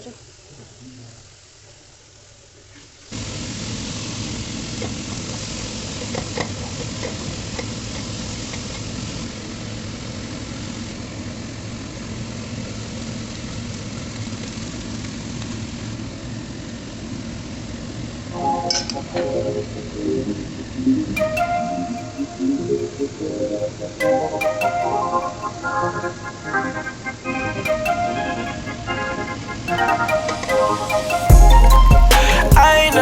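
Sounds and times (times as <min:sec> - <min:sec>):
food sizzling in a pan: 0:02.9 - 0:17.9.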